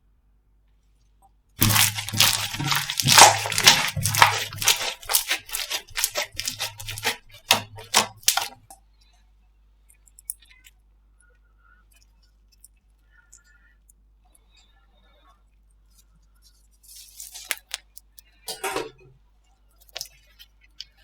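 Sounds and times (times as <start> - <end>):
slime crackling and popping: 1.6 - 8.7.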